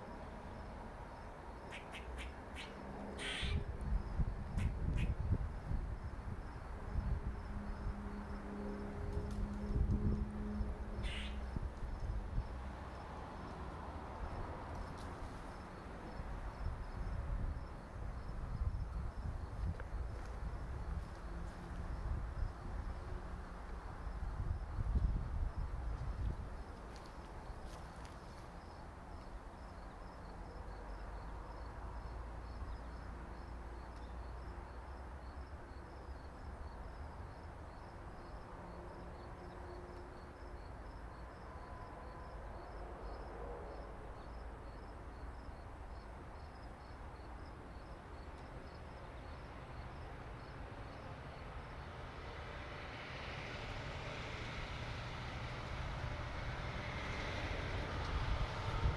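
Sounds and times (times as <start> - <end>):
low outdoor rumble: 53.5 - 58.9.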